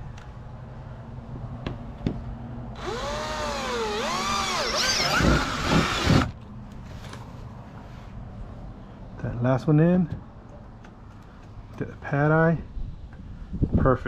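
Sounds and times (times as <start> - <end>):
power drill running: 2.8 - 6.3.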